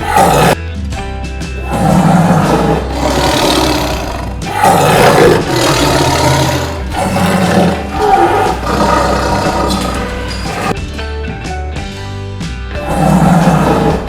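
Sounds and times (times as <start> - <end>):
tiger roaring: 0.0 - 0.6, 1.6 - 10.8, 12.8 - 14.0.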